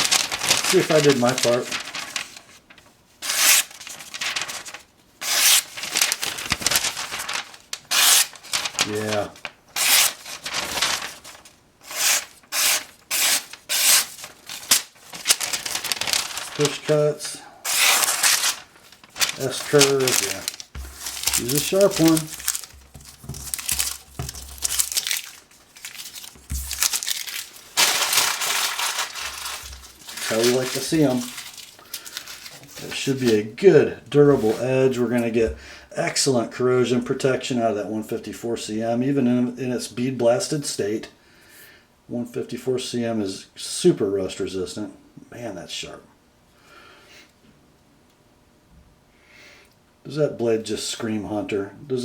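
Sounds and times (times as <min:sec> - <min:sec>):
knife slicing paper: 0:00.0 - 0:02.4, 0:03.2 - 0:09.2, 0:09.8 - 0:17.0, 0:17.7 - 0:33.4.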